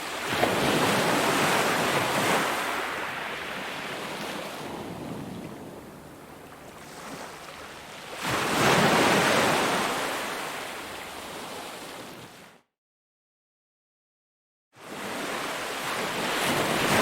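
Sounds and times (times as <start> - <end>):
ocean wave breaking: 0.0 - 12.1, 14.9 - 17.0.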